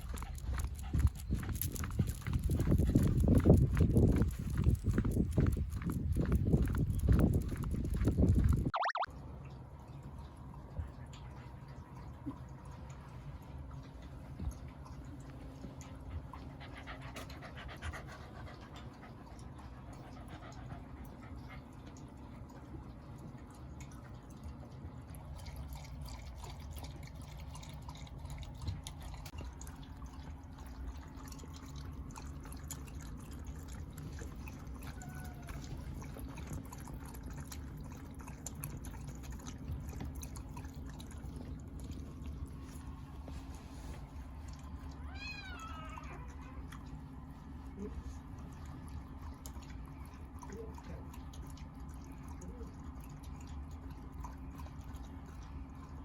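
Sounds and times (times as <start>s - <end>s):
dog panting: 0.0s - 6.4s, 15.6s - 22.8s.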